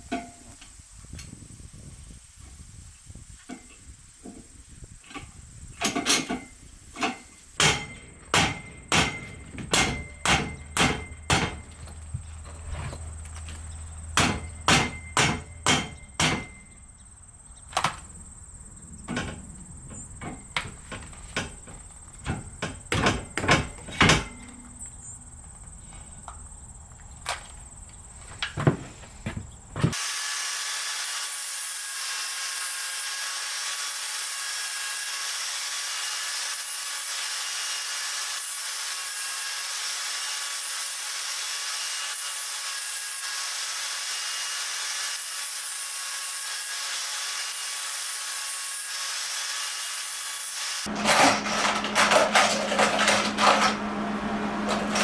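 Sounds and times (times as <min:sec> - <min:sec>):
hammer blows with metallic ring: 0:07.6 - 0:11.8, 0:14.2 - 0:16.8.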